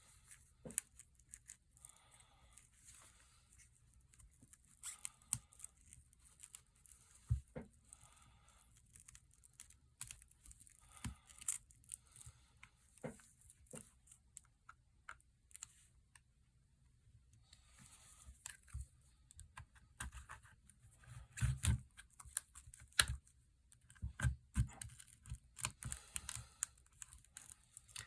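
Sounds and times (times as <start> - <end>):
adhesive scraping and tearing: 0.6 - 2.1.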